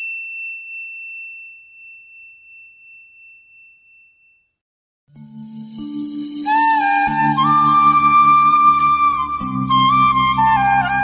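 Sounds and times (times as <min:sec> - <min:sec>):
high bell-like ding: 0:00.0 - 0:04.6.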